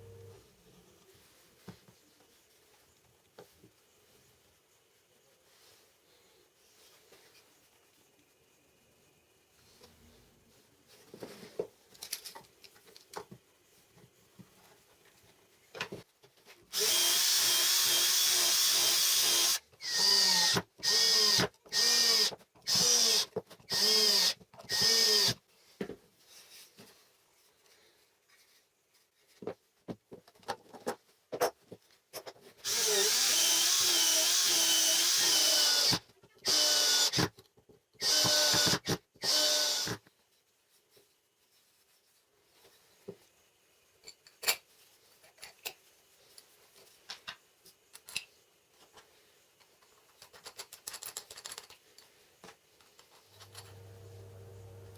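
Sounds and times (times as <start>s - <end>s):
power drill running: 16.7s - 25.4s, 32.6s - 37.3s, 38.0s - 40.0s.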